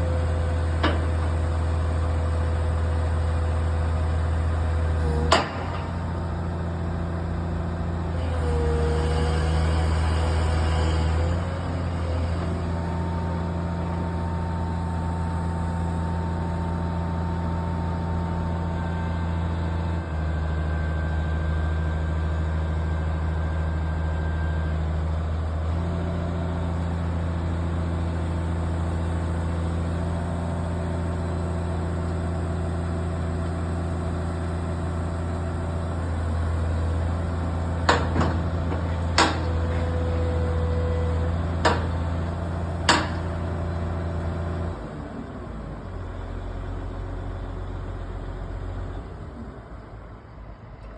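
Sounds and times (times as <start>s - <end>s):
excavator diesel engine running: 0.0s - 50.9s
sharp knocks: 37.9s - 39.9s, 41.6s - 42.0s, 42.9s - 43.3s.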